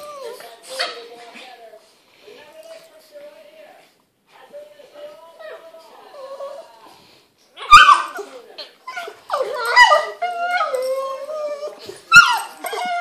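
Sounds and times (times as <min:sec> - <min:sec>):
dogs making wavering cries: 0:00.0 - 0:01.1, 0:07.6 - 0:13.0.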